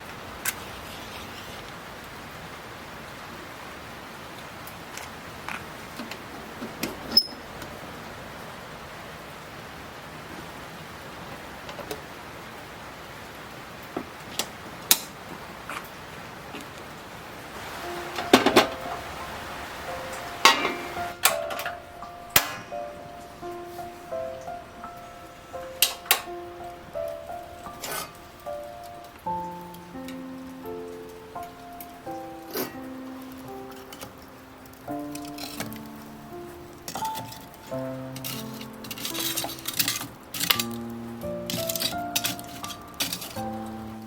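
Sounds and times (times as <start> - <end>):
rain falling: 0.0 - 44.0
background music with held notes: 17.6 - 44.0.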